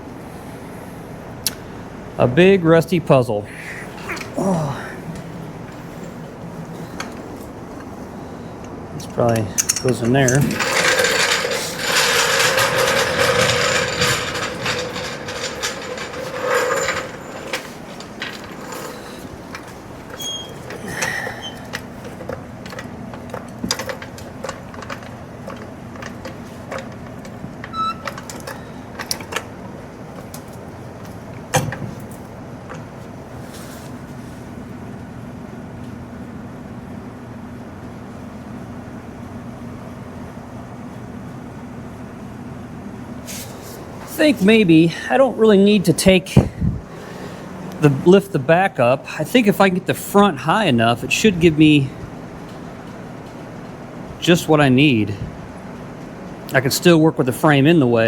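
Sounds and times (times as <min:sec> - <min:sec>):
machine hum: 0:03.6 - 0:33.4
sheet metal scraping and clattering: 0:09.6 - 0:30.5.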